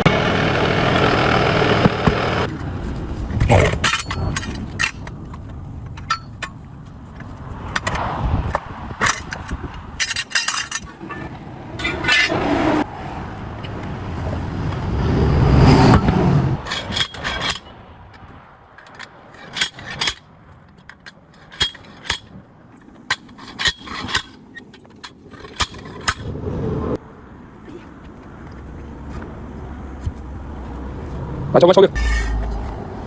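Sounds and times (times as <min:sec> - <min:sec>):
metal tools clinking and scraping: 0:03.4 - 0:12.7, 0:16.6 - 0:17.7, 0:18.7 - 0:26.3, 0:32.0 - 0:32.8
passing vehicle rumble: 0:06.6 - 0:10.0, 0:10.9 - 0:16.9, 0:26.2 - 0:33.0.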